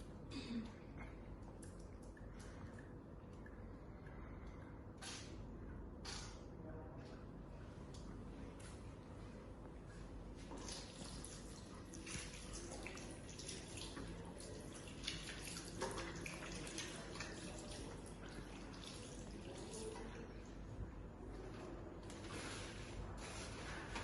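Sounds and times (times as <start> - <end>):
tap water running: 10.4 - 20.2
water splashing into a sink: 10.4 - 20.4.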